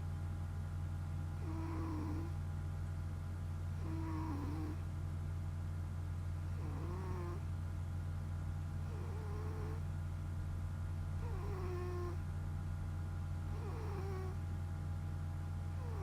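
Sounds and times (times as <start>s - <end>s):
steady low hum: 0.0s - 16.0s
cat snoring with whistle: 1.4s - 2.4s, 3.8s - 4.8s, 6.5s - 7.4s, 8.8s - 9.8s, 11.2s - 12.2s, 13.5s - 14.4s, 15.8s - 16.0s.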